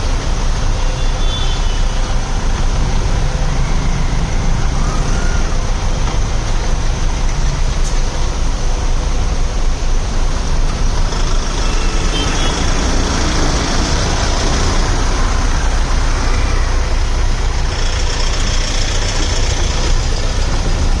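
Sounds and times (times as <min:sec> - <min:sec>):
road traffic engines rumbling: 0:00.0 - 0:21.0.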